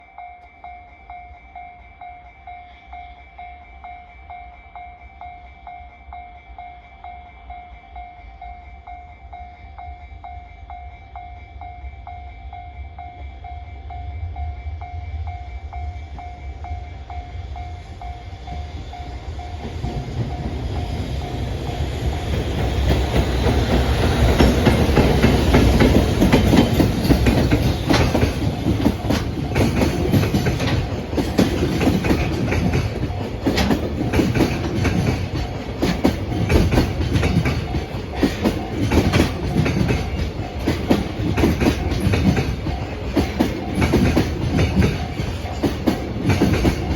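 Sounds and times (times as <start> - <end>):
freight train passing: 0.0 - 46.9
level-crossing alarm bell: 0.0 - 46.9
wagon wheels clicking on rail joints: 19.0 - 46.9.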